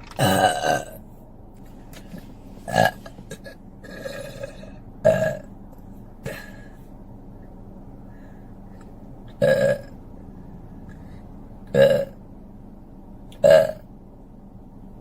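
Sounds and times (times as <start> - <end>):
woman burping: 0.1 - 1.0, 2.7 - 5.4, 9.4 - 9.9, 13.4 - 13.8.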